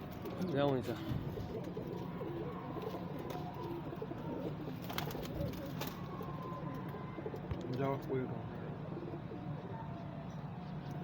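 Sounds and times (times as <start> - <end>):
pigeons cooing: 0.0 - 9.7.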